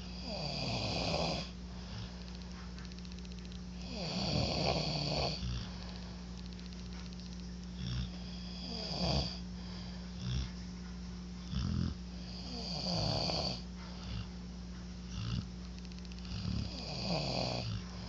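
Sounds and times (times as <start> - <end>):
people snoring: 0.0 - 2.1, 3.8 - 5.8, 7.8 - 9.4, 11.5 - 14.3, 15.1 - 15.5, 16.2 - 17.8
steady low hum: 0.0 - 18.0.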